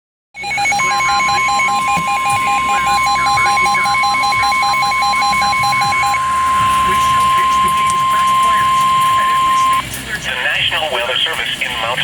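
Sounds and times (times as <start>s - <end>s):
rapid two-pitch electronic beeping: 0.4s - 9.8s
steady alert tone: 0.4s - 9.8s.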